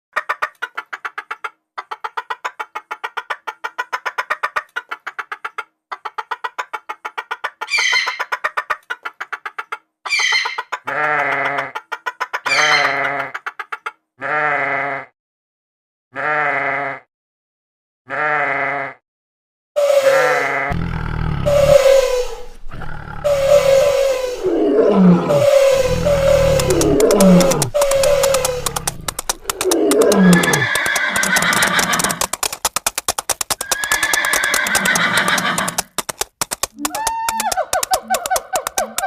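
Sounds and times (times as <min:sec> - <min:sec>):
wavering bleat-like calls: 0:14.2 - 0:15.1, 0:16.2 - 0:17.1, 0:18.1 - 0:19.0, 0:19.9 - 0:31.7
high falling whistles: 0:21.5 - 0:22.6, 0:23.3 - 0:24.6
cartoon rattling pulses: 0:23.3 - 0:39.0.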